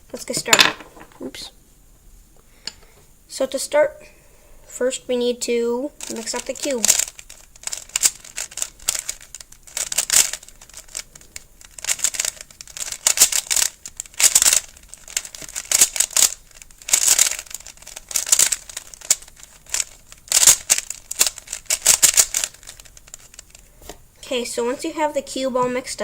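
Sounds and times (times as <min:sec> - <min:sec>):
puzzle cube twisting clicks: 0:06.0 - 0:23.6.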